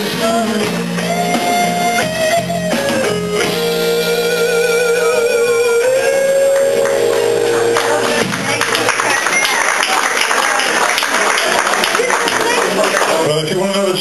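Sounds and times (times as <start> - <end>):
steady bass line: 0.0 - 9.3
guitar holding long notes: 0.0 - 13.5
live band playing: 0.0 - 14.0.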